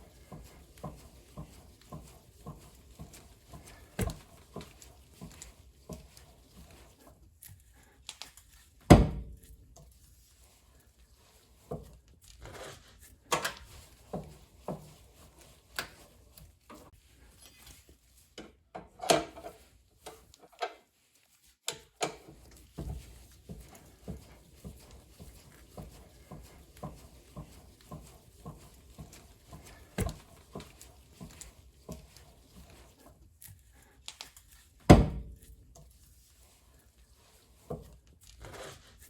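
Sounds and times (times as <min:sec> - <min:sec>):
clanks and knocks of tools: 0:18.4 - 0:20.9, 0:21.7 - 0:22.4.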